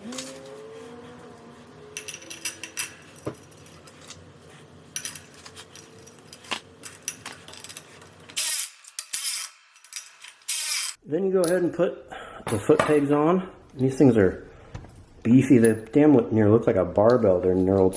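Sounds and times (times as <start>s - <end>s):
metal tools clinking: 1.9s - 4.2s, 4.9s - 11.6s.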